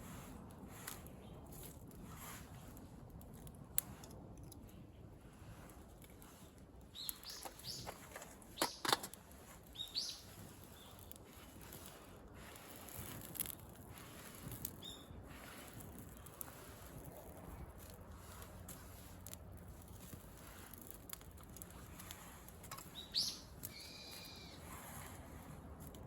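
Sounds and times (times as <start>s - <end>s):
faint outdoor background: 0.0s - 26.0s
bird chirps: 6.9s - 7.9s, 9.7s - 11.0s, 22.9s - 24.6s.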